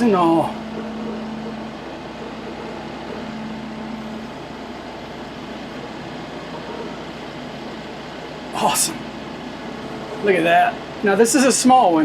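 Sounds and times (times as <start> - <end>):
low steady tone: 0.0 - 8.0
tractor engine running: 0.0 - 11.7.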